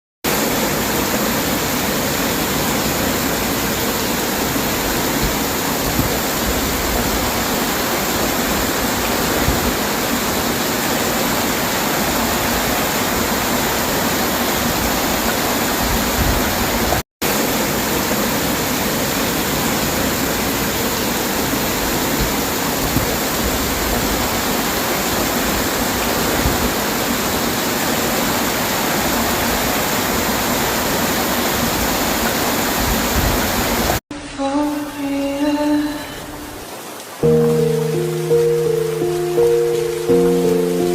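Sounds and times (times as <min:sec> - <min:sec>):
heavy rain hissing: 0:00.3 - 0:40.9.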